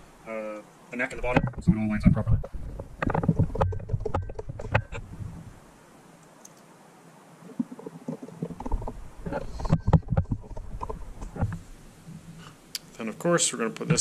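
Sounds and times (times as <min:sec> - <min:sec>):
plastic parts knocking and clicking: 0:01.3 - 0:05.0, 0:08.1 - 0:11.6.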